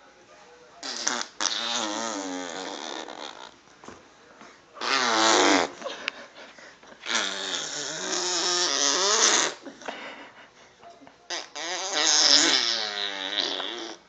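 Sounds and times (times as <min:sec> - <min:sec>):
mouth fart noises: 0:00.8 - 0:03.6, 0:04.8 - 0:05.8, 0:07.0 - 0:09.6, 0:11.3 - 0:14.0.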